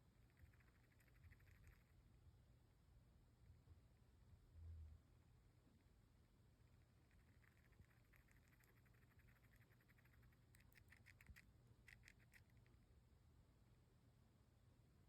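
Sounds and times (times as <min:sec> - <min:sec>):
hamster grinding teeth: 0:00.3 - 0:01.9, 0:07.1 - 0:12.7.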